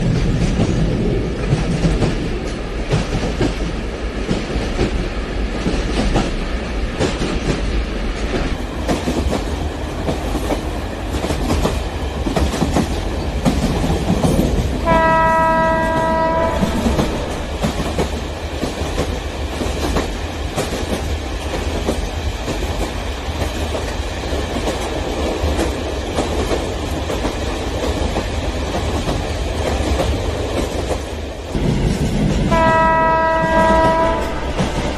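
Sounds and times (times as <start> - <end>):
train rumble and wheel clatter: 0.0 - 34.9
train horn blast: 14.8 - 17.5, 32.5 - 34.9.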